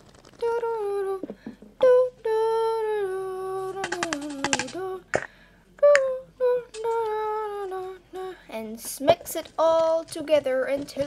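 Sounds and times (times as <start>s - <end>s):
high voice humming: 0.4s - 11.0s
run of clicks: 3.8s - 5.3s.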